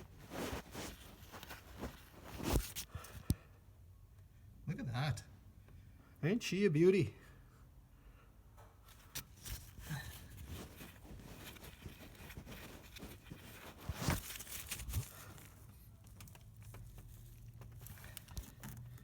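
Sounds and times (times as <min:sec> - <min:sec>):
light scraping: 0:00.0 - 0:02.9
small handling clicks: 0:10.6 - 0:19.0.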